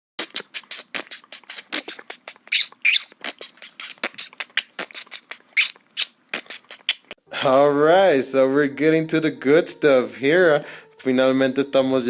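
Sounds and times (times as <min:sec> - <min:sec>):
beatboxing: 0:00.2 - 0:07.2.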